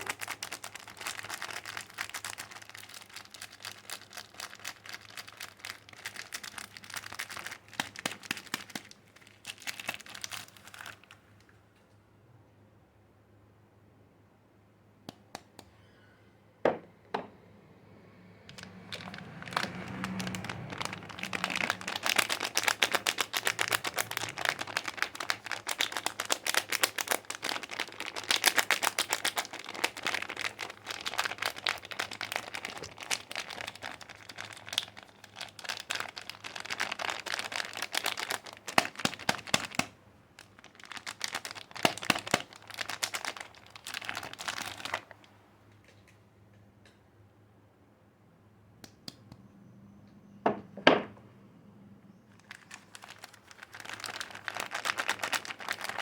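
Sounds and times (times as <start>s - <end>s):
wrapper crinkling: 0.0s - 11.5s, 18.5s - 45.3s, 52.4s - 56.0s.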